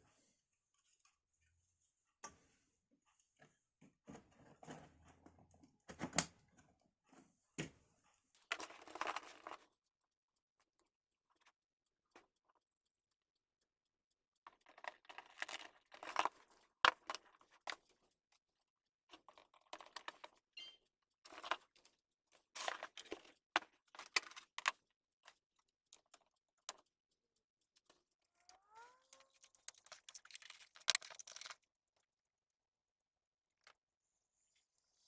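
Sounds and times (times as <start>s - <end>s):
rustling and crinkling: 28.5s - 31.6s.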